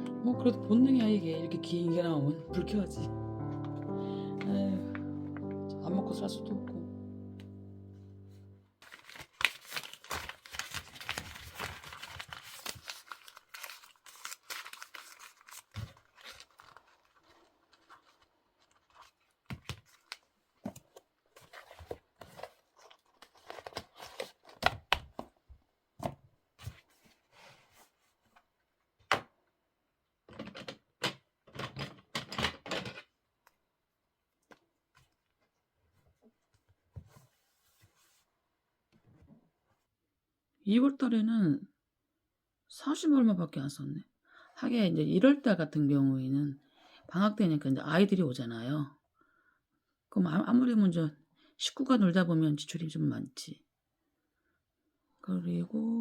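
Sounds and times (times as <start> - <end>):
paper rustling: 8.8 - 25.3.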